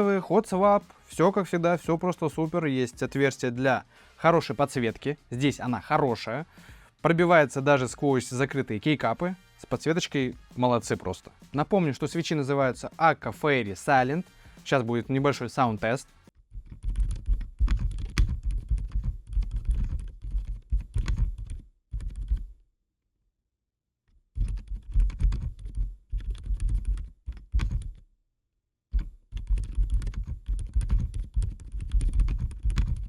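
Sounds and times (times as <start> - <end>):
soft mechanical keyboard typing: 16.6 - 22.5, 24.4 - 28.0, 29.0 - 33.0.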